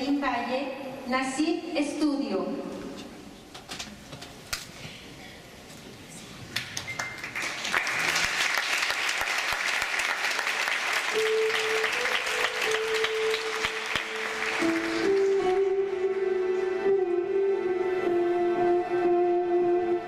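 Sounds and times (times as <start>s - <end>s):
audience applauding: 6.6s - 15.7s
instrument playing long held notes: 11.0s - 20.0s.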